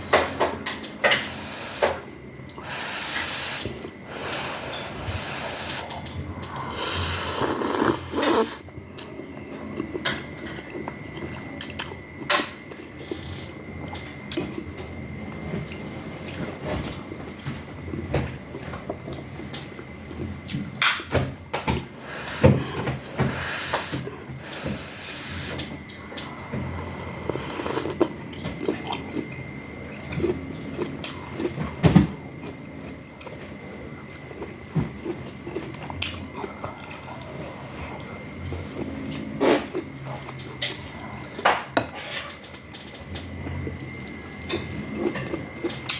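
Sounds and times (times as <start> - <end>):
slurping noodles and broth: 2.6 - 8.6, 22.0 - 25.7, 26.6 - 28.8
chewing: 25.5 - 41.8, 42.5 - 45.9.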